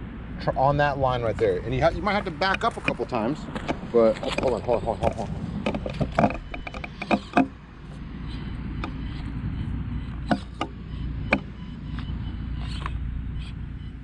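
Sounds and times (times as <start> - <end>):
tires and chassis knocking on stone: 2.1 - 7.6, 10.2 - 12.1.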